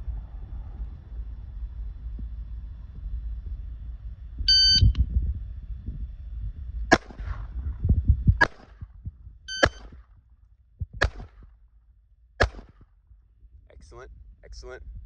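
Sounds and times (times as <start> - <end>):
shot timer beep: 4.5 - 5.0, 9.5 - 9.9
pistol shots: 6.9 - 7.4, 8.4 - 8.8, 9.6 - 10.0, 11.0 - 11.4, 12.4 - 12.8.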